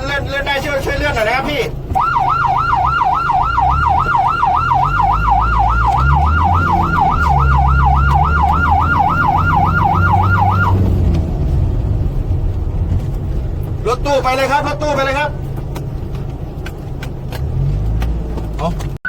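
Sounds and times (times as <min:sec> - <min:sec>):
low engine rumble: 0:00.0 - 0:19.0
ambulance siren yelping: 0:01.9 - 0:11.3.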